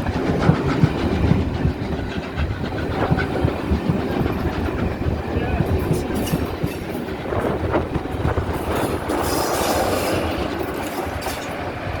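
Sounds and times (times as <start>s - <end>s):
low knocks of train: 0.0s - 12.0s
steam hiss: 0.0s - 12.0s
train wheels on rails: 0.0s - 12.0s.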